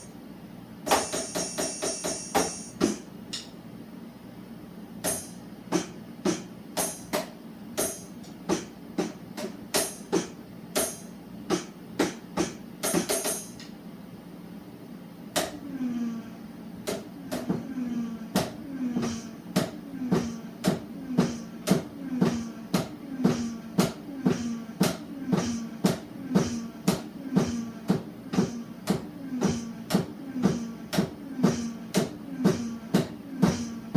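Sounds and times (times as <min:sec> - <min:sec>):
drum beat: 0:11.6 - 0:13.6, 0:19.0 - 0:33.9.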